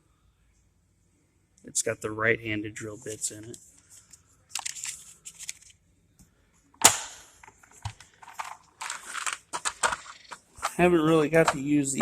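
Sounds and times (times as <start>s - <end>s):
sharp snap: 6.8s - 7.3s
tool case clicks and rattles: 6.8s - 12.0s.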